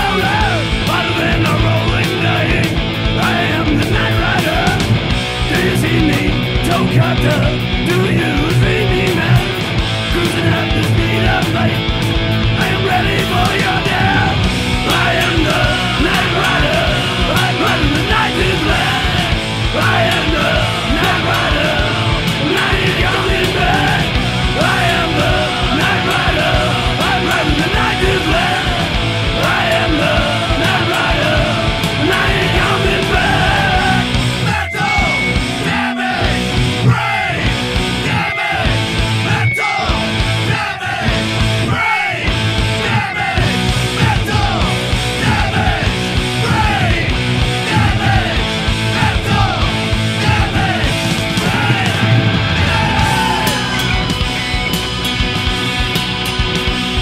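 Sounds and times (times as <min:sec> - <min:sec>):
distorted electric guitars: 0:00.0 - 0:57.0
heavy metal punk band playing: 0:00.0 - 0:57.0
pounding drums: 0:00.0 - 0:57.0.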